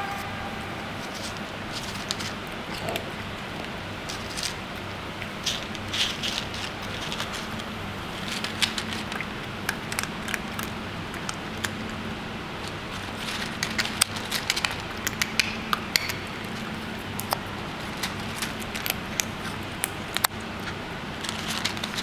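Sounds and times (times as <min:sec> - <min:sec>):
steady low hum: 0:00.0 - 0:03.7
cat chewing food: 0:01.7 - 0:22.0.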